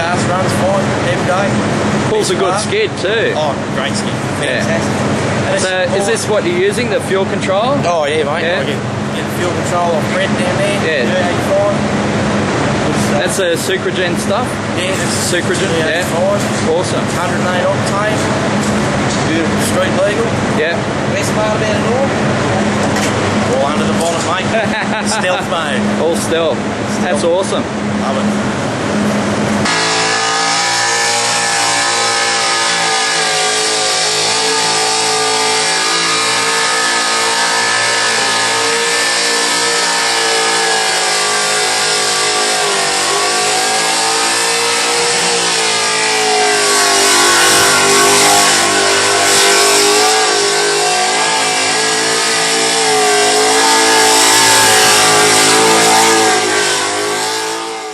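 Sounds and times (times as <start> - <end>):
engine at high revs: 0.0 - 57.9.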